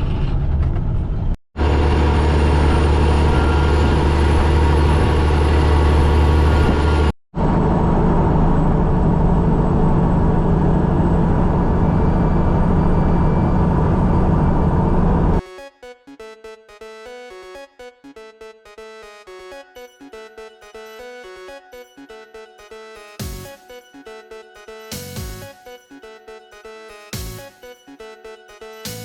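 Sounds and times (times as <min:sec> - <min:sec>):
truck diesel engine droning: 0:00.0 - 0:15.4.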